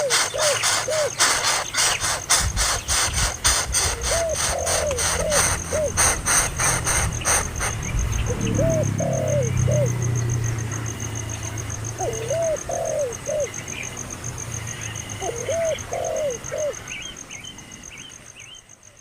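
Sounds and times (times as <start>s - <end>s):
sharp clicking rattle: 0.0s - 8.6s
bird calling: 0.0s - 10.2s, 11.4s - 14.0s, 14.7s - 18.1s.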